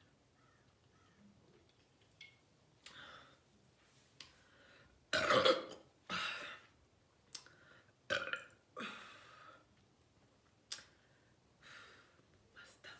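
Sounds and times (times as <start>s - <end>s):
girl burping: 5.1s - 6.4s, 8.1s - 8.9s.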